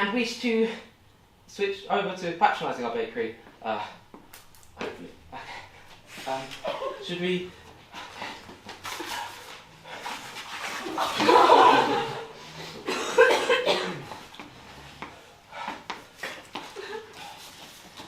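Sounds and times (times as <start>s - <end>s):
audience laughter: 11.0s - 12.4s
person coughing: 12.8s - 14.2s.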